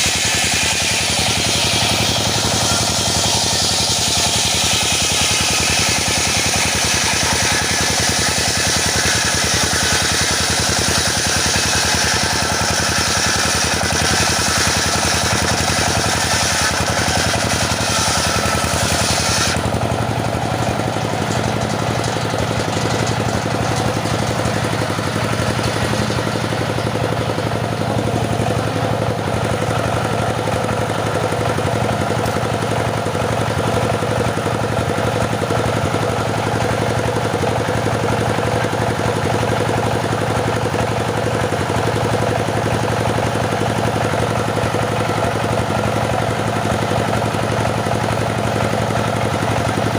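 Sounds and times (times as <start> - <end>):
petrol saw engine running: 0.0 - 49.9
saw rasping through wood: 0.0 - 49.9.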